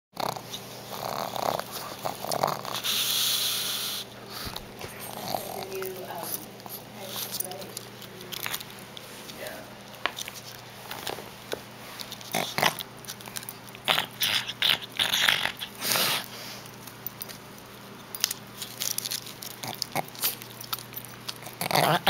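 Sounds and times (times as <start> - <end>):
dog snoring and snorting: 0.2 - 4.1, 4.9 - 6.2, 13.8 - 16.3, 21.4 - 22.0.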